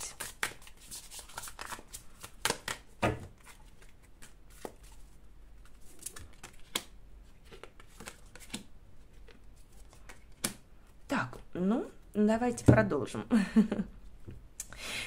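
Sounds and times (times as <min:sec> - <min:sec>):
cards clicking and rustling: 0:00.1 - 0:05.0, 0:05.6 - 0:10.6.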